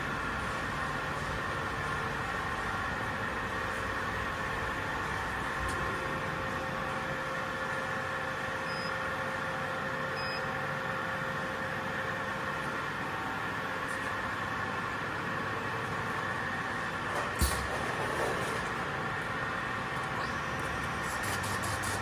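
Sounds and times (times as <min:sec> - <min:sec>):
short high beeps: 0:08.7 - 0:09.0
welding machine humming: 0:18.6 - 0:22.0.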